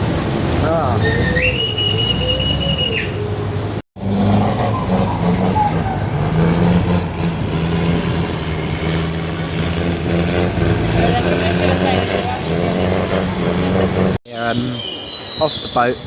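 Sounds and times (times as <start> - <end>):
boat engine humming: 0.0 - 14.2
short high whistle tone: 1.0 - 3.1.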